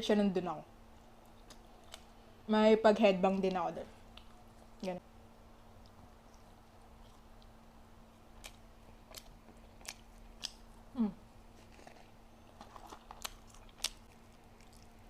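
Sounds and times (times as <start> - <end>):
person chewing food: 1.0 - 2.2, 5.5 - 15.0
mouth clicks and crunches: 8.2 - 10.7, 11.6 - 15.0.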